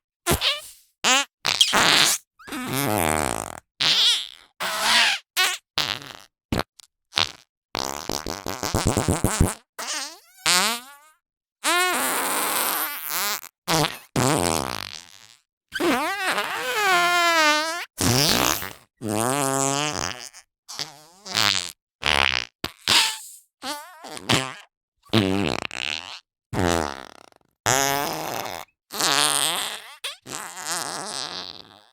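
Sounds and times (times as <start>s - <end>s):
fart putty squelching: 0.3s - 5.2s, 18.0s - 20.2s, 22.1s - 23.3s.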